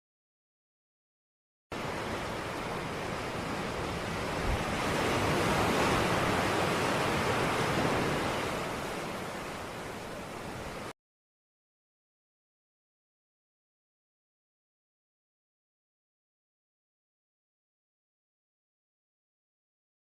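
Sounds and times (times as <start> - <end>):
ocean waves washing ashore: 1.7 - 11.0.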